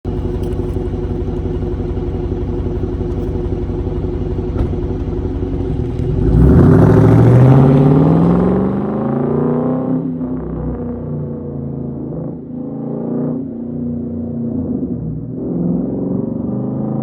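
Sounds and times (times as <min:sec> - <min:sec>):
car exhaust rumbling and accelerating: 0:00.0 - 0:17.0.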